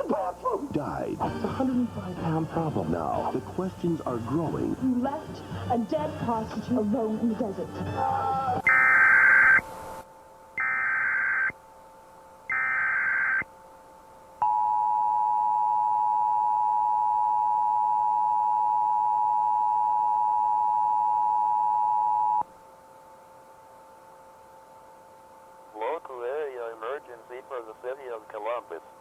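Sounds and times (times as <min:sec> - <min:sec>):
two-tone attention signal: 0:08.7 - 0:09.6.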